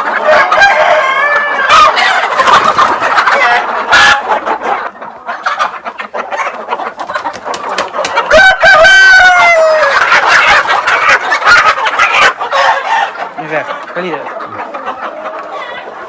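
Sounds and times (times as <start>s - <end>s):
chickens clucking and squawking: 0.0s - 16.0s
rooster crowing: 0.2s - 2.1s, 8.3s - 10.0s.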